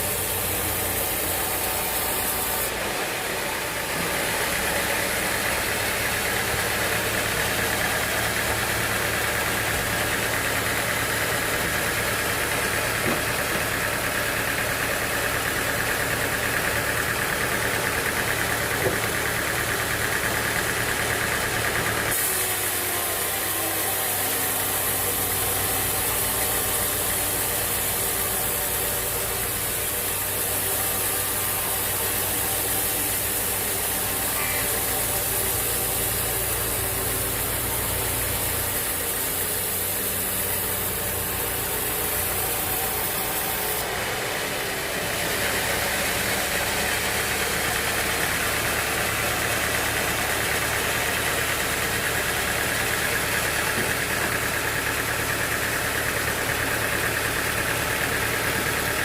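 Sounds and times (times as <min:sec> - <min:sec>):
sawmill machinery engine running: 0:00.0 - 0:59.0.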